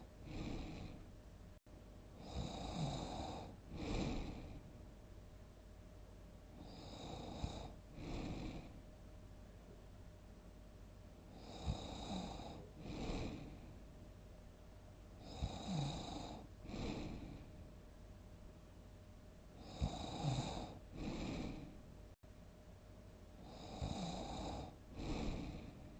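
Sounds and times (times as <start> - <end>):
person snoring: 0.2 - 1.0, 2.2 - 4.6, 6.6 - 8.8, 11.3 - 13.7, 15.2 - 17.5, 19.6 - 21.8, 23.4 - 25.9.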